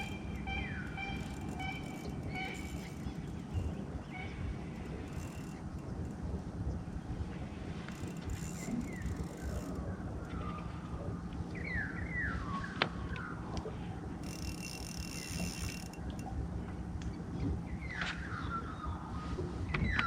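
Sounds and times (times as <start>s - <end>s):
birds calling: 0.0s - 7.3s.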